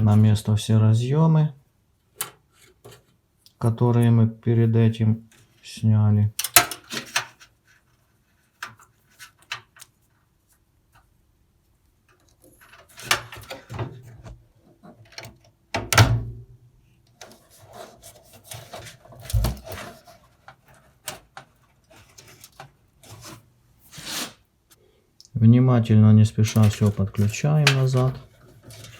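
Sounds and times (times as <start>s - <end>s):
clicks and knocks in computer case: 19.2s - 20.0s.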